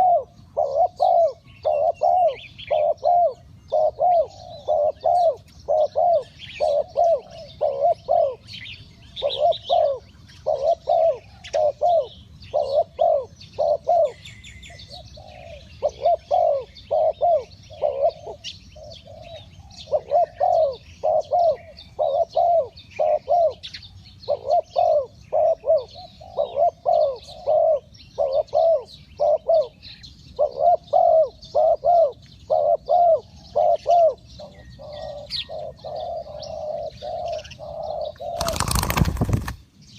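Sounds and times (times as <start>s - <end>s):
dove cooing: 0.0s - 39.6s
small birds chirping: 0.0s - 39.9s.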